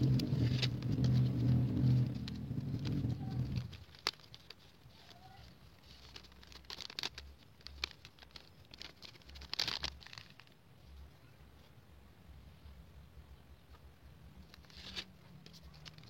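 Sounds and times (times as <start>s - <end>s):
small items clicking: 0.0s - 10.6s, 14.4s - 16.0s
plastic packaging rustling: 0.0s - 11.0s, 14.4s - 16.0s.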